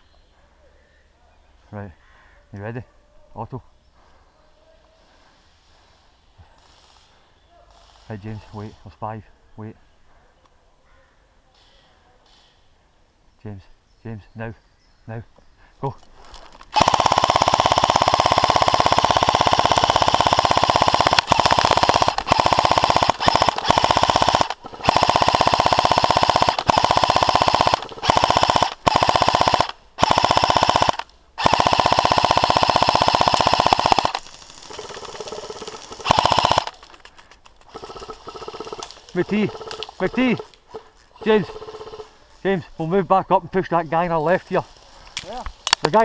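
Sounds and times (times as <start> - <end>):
airsoft guns firing rapidly: 16.7 - 37.1, 37.7 - 42.1.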